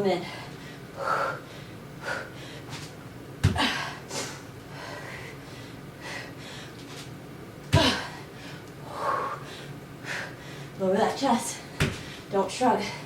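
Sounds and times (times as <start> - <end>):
person breathing hard: 0.3 - 2.7, 3.5 - 6.8, 7.8 - 10.8.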